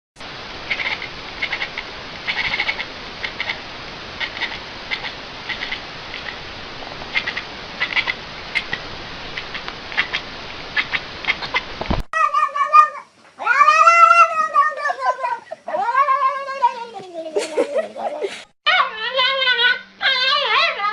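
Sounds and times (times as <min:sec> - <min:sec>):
steady hiss: 0:00.2 - 0:12.1
animal chirping high-pitched: 0:04.2 - 0:06.4, 0:07.2 - 0:08.8
cat yowling: 0:12.2 - 0:17.2, 0:18.7 - 0:20.9.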